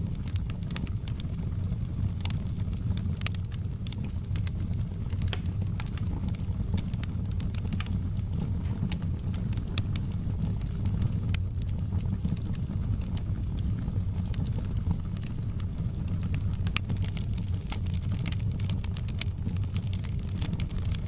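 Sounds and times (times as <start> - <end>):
low rumble of flames: 0.0 - 21.0
wood fire crackling and popping: 0.0 - 21.0.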